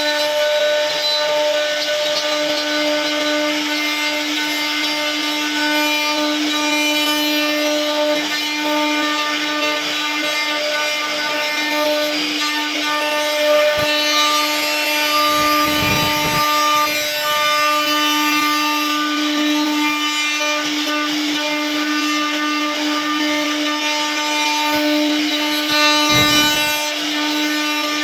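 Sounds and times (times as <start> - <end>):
bit rasping into wood: 8.5 - 19.1, 25.7 - 27.2
router spindle humming: 12.6 - 17.9, 26.0 - 27.2.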